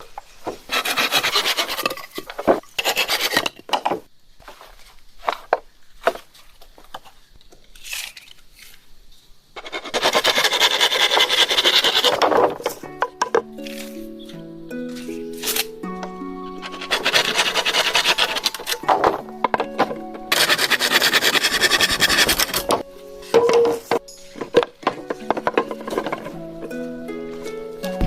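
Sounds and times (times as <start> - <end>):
hand tool rasping against bamboo: 0.6 - 3.6, 9.6 - 12.9, 16.5 - 19.1, 20.3 - 26.4.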